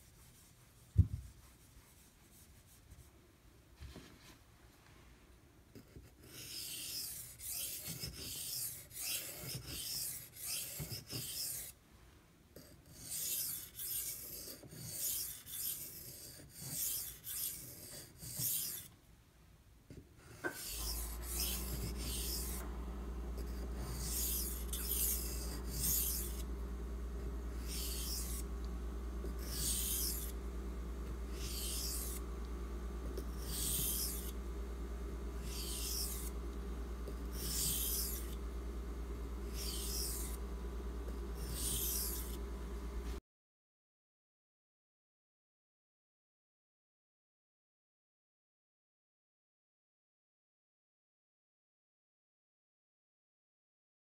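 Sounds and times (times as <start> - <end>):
knife scraping on whetstone: 6.2 - 11.8, 12.8 - 18.9, 20.2 - 22.6, 23.4 - 26.5, 27.5 - 28.6, 29.2 - 30.4, 31.3 - 32.3, 33.1 - 34.4, 35.4 - 36.4, 37.1 - 38.4, 39.5 - 40.5, 41.2 - 42.4
steady low hum: 20.2 - 43.2.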